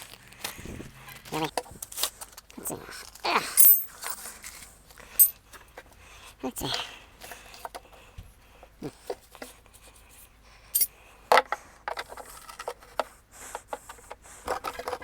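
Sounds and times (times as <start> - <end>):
metal hand tools clinking: 3.5 - 4.2
sharp metal clanks: 3.6 - 4.1.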